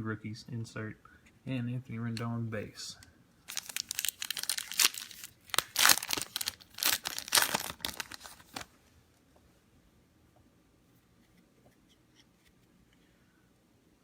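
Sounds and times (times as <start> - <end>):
wrapper crinkling and tearing: 3.5 - 8.7.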